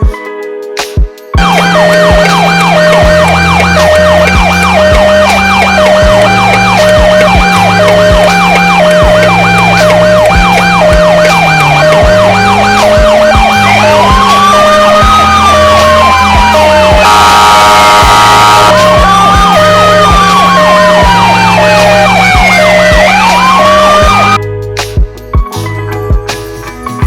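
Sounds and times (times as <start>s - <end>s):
low thumping beat: 0.0s - 0.2s, 1.0s - 26.5s
fast yelp siren: 1.4s - 24.4s
slow wailing siren: 1.4s - 24.4s
two-tone hi-lo siren: 1.4s - 24.4s.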